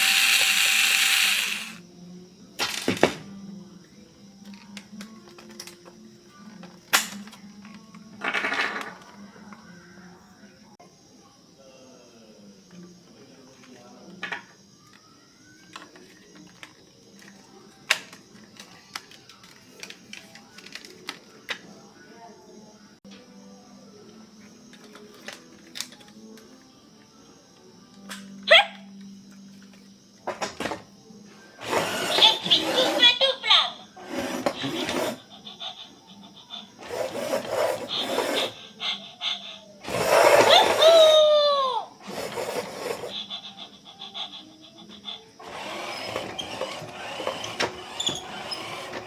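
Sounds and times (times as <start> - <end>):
soft background music: 0.2 - 49.0.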